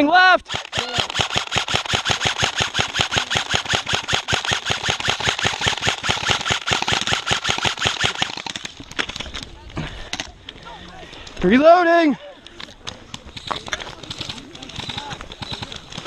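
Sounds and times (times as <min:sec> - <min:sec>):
airsoft gun rapid shots: 0:00.4 - 0:08.8, 0:13.4 - 0:16.0.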